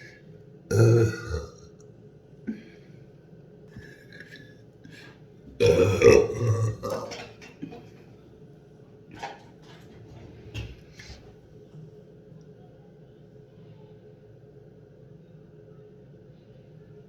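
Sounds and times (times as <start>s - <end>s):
loud burp: 0.7s - 1.8s, 5.6s - 7.6s.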